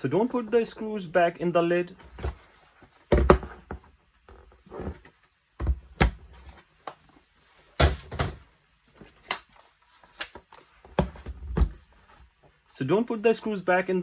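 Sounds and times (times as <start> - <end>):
laptop knocks and thuds: 3.1 - 3.9, 5.6 - 6.3, 7.8 - 8.5.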